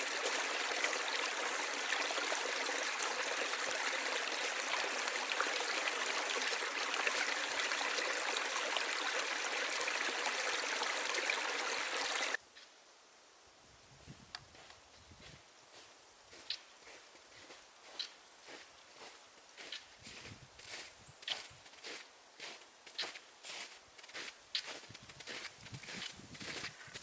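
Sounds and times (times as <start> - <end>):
stream water rushing: 0.0 - 12.4.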